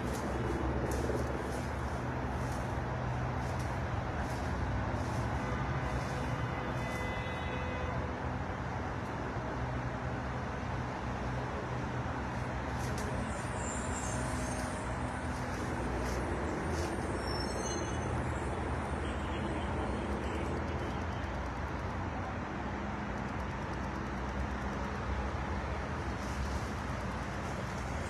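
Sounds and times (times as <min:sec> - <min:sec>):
slow road traffic rumble: 0:00.0 - 0:28.0.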